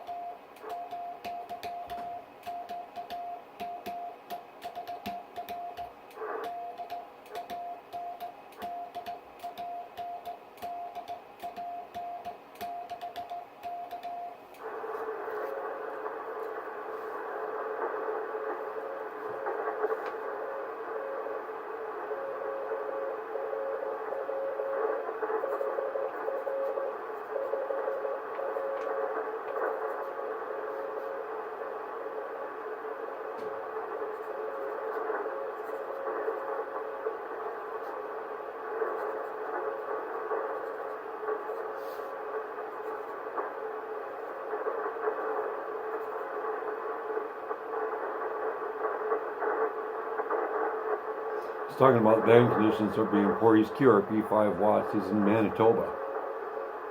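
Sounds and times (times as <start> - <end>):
morse code tone: 0.0 - 14.4
faint morse signal: 0.0 - 56.9
radio band noise hiss: 0.0 - 56.9.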